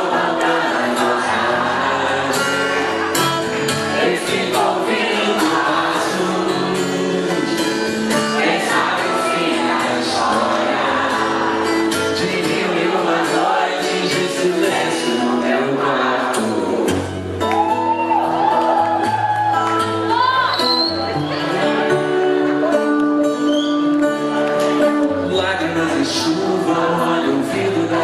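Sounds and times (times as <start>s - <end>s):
crowd singing along: 0.0s - 17.4s, 21.1s - 22.6s, 24.7s - 28.0s
live rock band playing: 2.4s - 12.2s.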